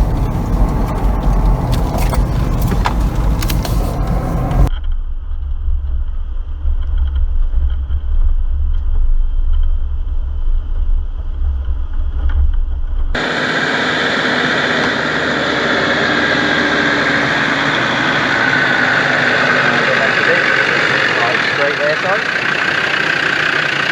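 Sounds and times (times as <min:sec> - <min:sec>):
low engine drone: 0:00.0 - 0:04.7, 0:13.2 - 0:23.9
tyre noise: 0:00.0 - 0:04.7.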